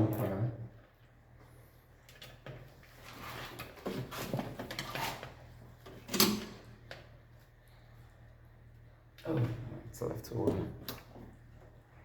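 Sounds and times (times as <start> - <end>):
rustling of cables: 0.8 - 9.6.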